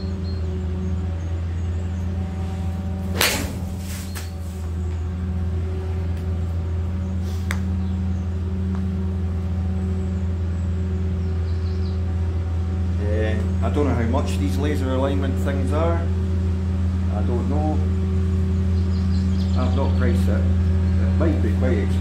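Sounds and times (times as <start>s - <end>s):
steady low hum: 0.0s - 22.0s
golf club striking ball: 2.8s - 4.4s.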